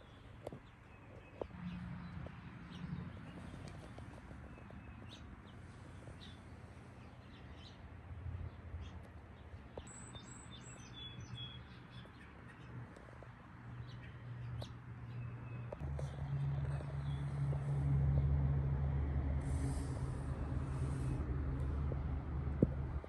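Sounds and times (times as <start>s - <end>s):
low steady rumble: 15.8s - 23.0s.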